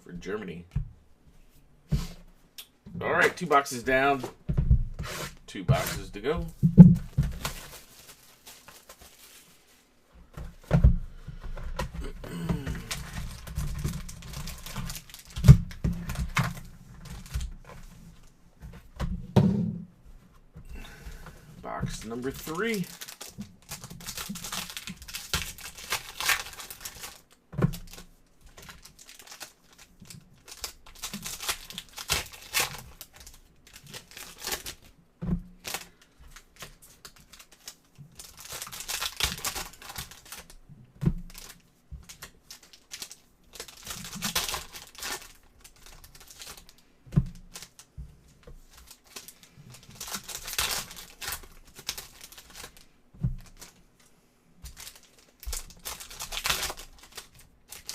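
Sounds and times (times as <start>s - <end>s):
foil packs tearing and crinkling: 7.2s - 9.6s, 12.0s - 17.7s, 21.7s - 35.0s, 35.6s - 40.6s, 41.2s - 47.9s, 48.6s - 53.8s, 54.6s - 57.9s.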